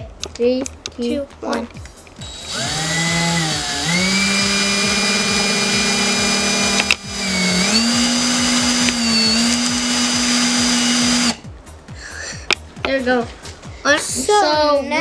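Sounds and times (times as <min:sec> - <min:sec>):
electric drill motor whine: 0:02.2 - 0:11.4.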